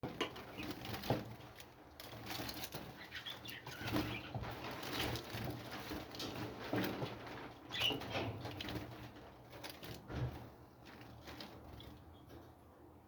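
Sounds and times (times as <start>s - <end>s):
birds flapping wings: 0.5s - 10.4s
bird calls: 2.9s - 4.4s, 7.7s - 8.1s.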